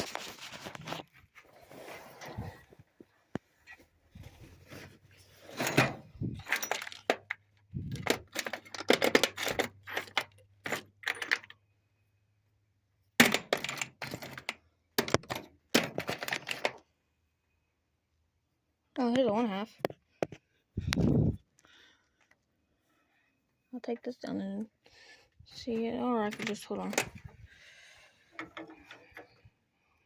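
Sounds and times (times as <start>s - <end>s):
metal tools clattering: 5.4s - 11.6s.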